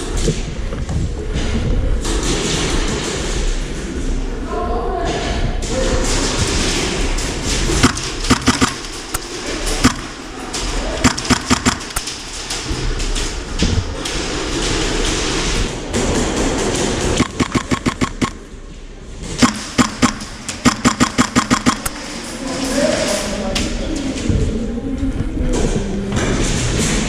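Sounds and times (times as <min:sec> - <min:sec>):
indoor hall background noise: 0:00.0 - 0:27.0
airsoft gun firing bursts: 0:07.7 - 0:12.9, 0:17.2 - 0:18.4, 0:19.4 - 0:22.2.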